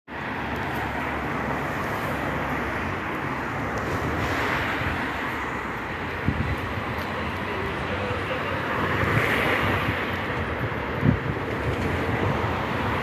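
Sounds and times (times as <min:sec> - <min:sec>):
traffic rushing past: 0:00.1 - 0:13.0
vehicle passing close: 0:00.3 - 0:07.3.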